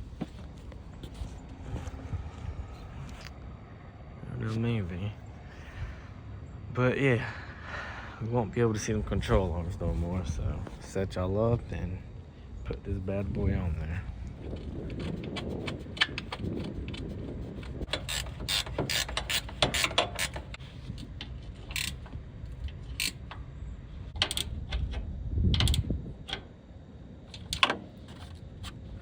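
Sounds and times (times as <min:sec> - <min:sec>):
hand ratchet clicking: 0:17.9 - 0:20.6, 0:21.7 - 0:22.0, 0:23.0 - 0:23.2.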